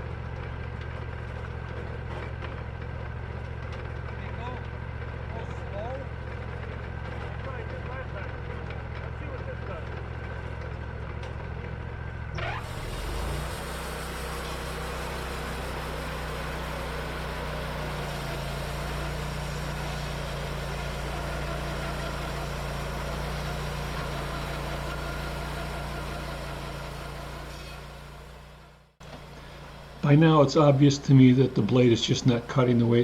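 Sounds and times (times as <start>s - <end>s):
band sawmill blade cutting wood: 6.1s - 33.0s.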